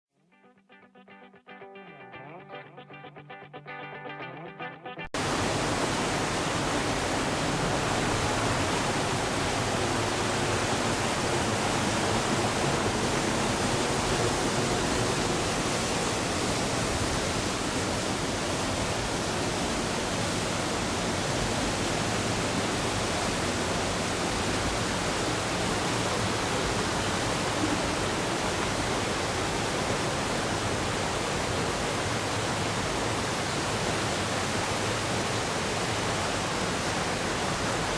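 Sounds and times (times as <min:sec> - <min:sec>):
guitar strum: 0:00.3 - 0:05.1
flooded river roaring: 0:05.2 - 0:37.9.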